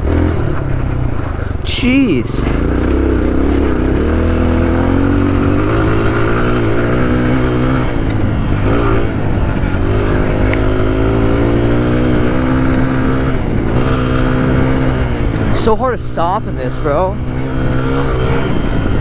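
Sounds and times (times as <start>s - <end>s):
dirt bike engine under throttle: 0.0s - 19.0s.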